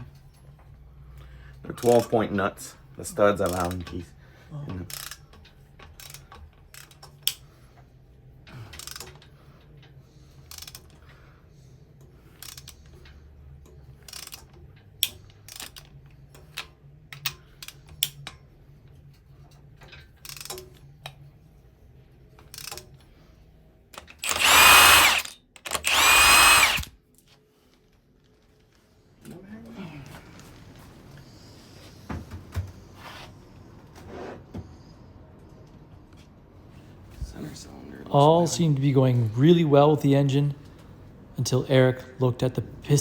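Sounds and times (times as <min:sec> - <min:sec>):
ratchet wrench clicking: 0:04.9 - 0:05.2, 0:05.9 - 0:07.4, 0:08.8 - 0:09.1, 0:10.5 - 0:11.0, 0:12.4 - 0:12.8, 0:14.0 - 0:15.9, 0:20.2 - 0:20.6, 0:22.4 - 0:22.9, 0:24.0 - 0:26.9
power tool whine: 0:24.2 - 0:26.9.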